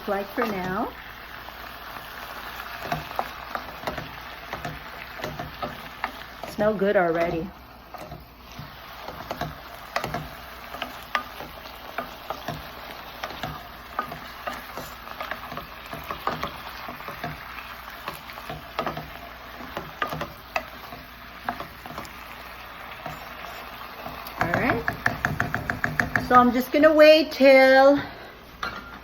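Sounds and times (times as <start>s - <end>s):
chicken sizzling in a pan: 0.0s - 27.7s
utensil tapping and scraping pan: 2.3s - 26.8s.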